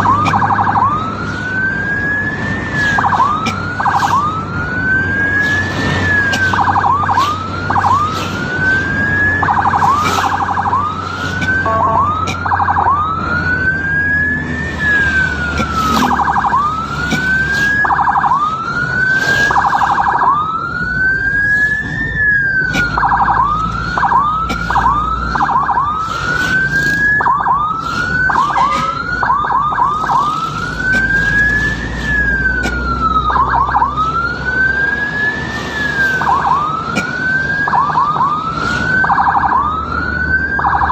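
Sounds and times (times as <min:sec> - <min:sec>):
ambulance siren wailing and yelping: 0:00.0 - 0:40.9
vehicle rumbling on road: 0:00.0 - 0:40.9.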